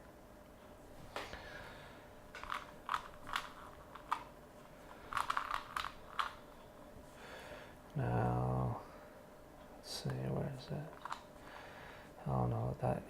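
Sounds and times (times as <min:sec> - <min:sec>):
rubik's cube layers clicking: 0:05.1 - 0:06.4.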